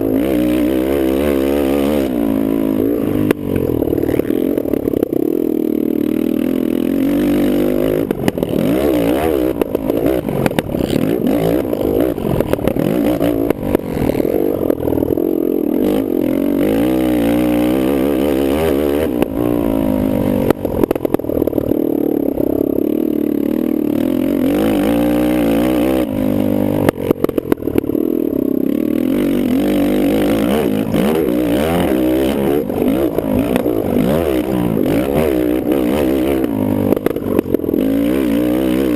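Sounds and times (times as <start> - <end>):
quad engine revving: 0.0 - 38.9.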